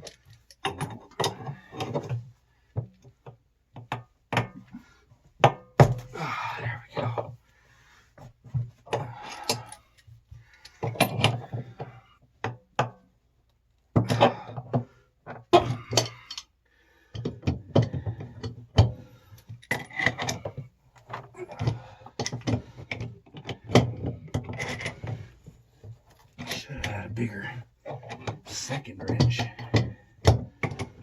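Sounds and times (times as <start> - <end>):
wrenches clanking on metal: 0.0 - 2.2, 8.9 - 10.1, 10.7 - 11.9, 14.0 - 16.5, 17.2 - 25.4, 26.2 - 31.0.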